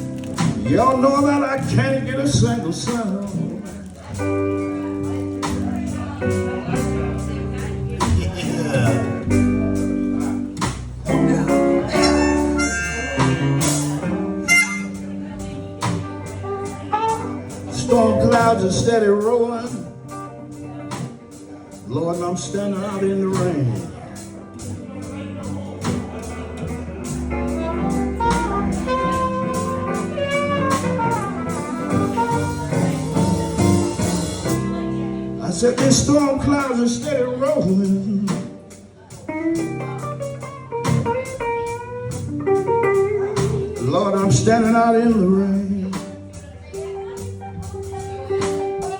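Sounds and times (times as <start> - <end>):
drums: 0.0 - 48.9
electric guitar: 0.0 - 48.9
upright bass: 0.0 - 48.9
bending lead melody: 4.2 - 23.6, 26.2 - 48.9
drum beat: 10.6 - 15.2
blues harmonica with bent notes: 11.1 - 15.2, 27.4 - 34.5.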